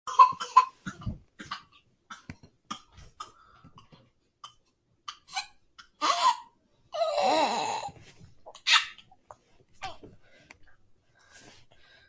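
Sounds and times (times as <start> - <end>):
toddler coughing: 0.1 - 3.4, 4.5 - 6.6.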